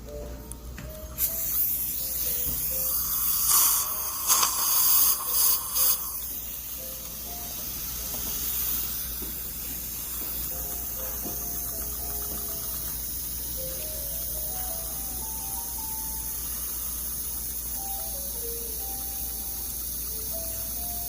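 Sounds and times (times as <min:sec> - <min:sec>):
hiss of suction and water spray: 0:01.2 - 0:06.6.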